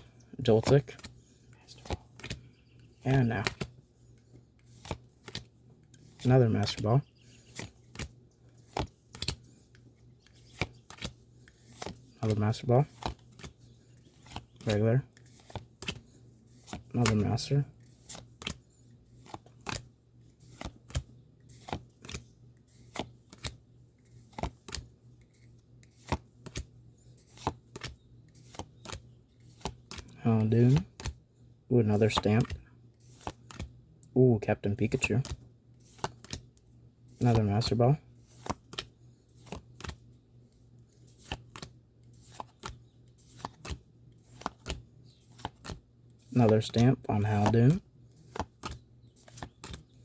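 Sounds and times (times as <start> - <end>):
trading cards snapping: 1.8 - 2.5, 4.6 - 6.8, 7.4 - 13.5, 14.1 - 16.0, 16.6 - 19.8, 20.4 - 23.6, 24.2 - 31.2, 32.0 - 33.7, 35.1 - 36.4, 37.3 - 40.0, 41.2 - 45.8, 47.4 - 49.9.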